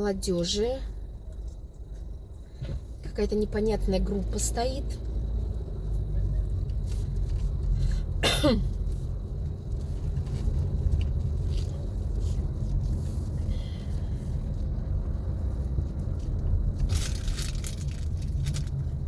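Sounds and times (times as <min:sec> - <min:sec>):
car cabin road rumble: 0:00.0 - 0:19.0
person coughing: 0:08.2 - 0:08.7.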